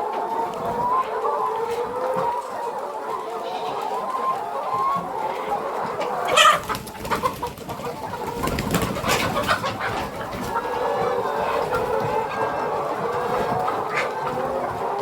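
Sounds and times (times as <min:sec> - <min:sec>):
hens clucking and chattering: 0:00.0 - 0:15.0.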